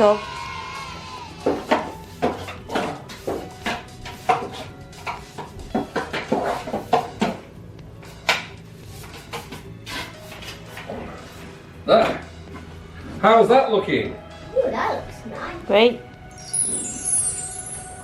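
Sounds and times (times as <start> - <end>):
furniture parts knocking and clicking: 1.4 - 7.5.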